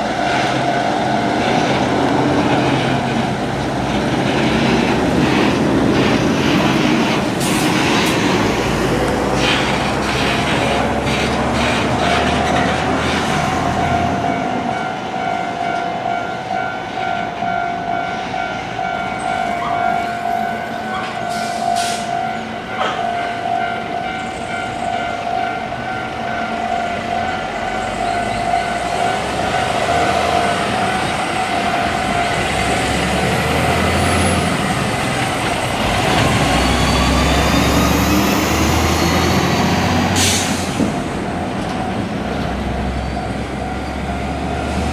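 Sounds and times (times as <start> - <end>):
level-crossing warning bell: 8.9 - 40.1, 41.3 - 44.9.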